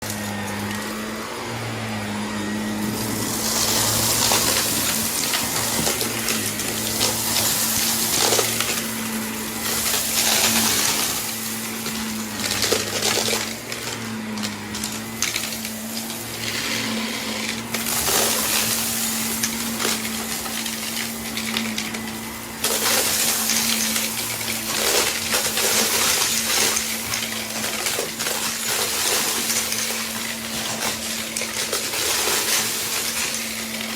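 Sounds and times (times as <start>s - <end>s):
vacuum cleaner motor hum: 0.0s - 33.9s
debris crackling and rattling: 3.0s - 33.9s.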